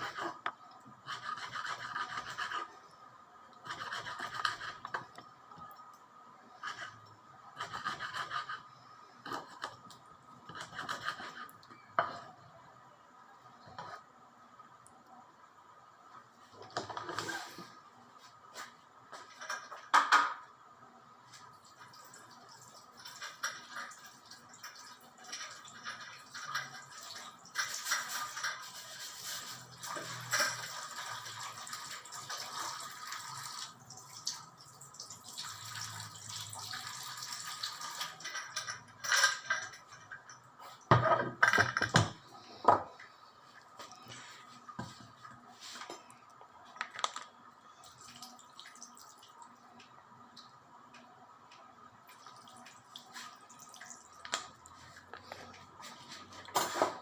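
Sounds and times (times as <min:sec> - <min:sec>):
water running from a tap: 0:29.6 - 0:38.4, 0:52.1 - 0:55.0.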